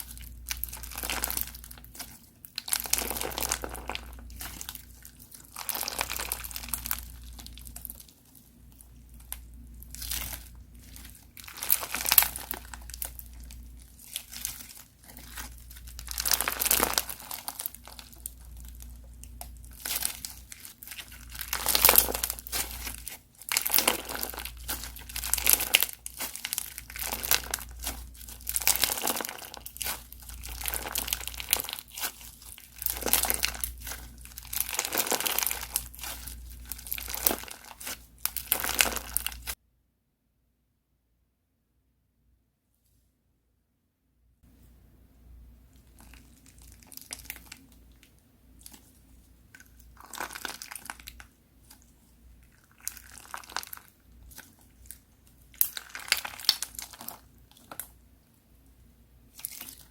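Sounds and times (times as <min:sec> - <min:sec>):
crunchy slime crackling: 0:00.0 - 0:39.6, 0:45.7 - 0:59.9.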